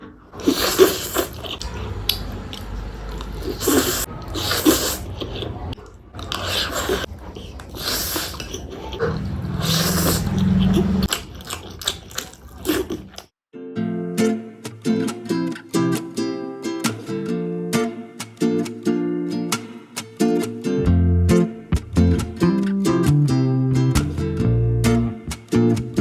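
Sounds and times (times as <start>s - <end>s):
chewing and biting: 0.4s - 13.3s.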